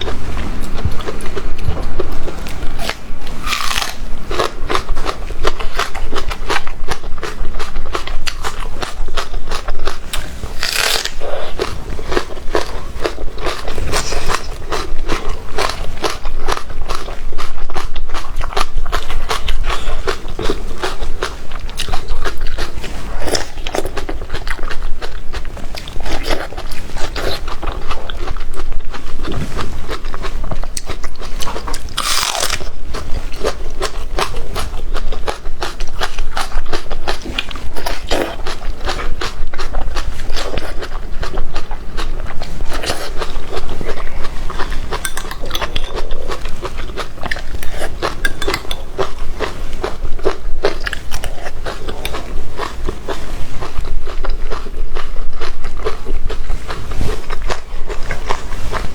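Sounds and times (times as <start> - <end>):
crunchy chewing: 0.0 - 58.9.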